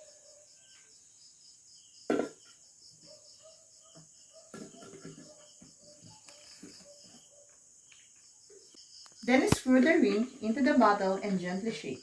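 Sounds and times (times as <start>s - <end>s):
crickets chirping: 0.0s - 12.0s
knocks from handling a tin: 2.1s - 2.4s.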